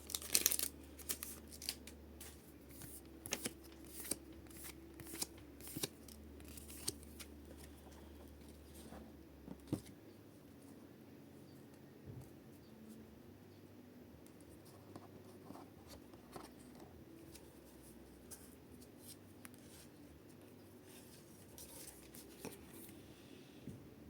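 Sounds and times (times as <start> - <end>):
cards and foil wrappers rustling: 0.0 - 8.0
quiet room hum: 0.0 - 24.0.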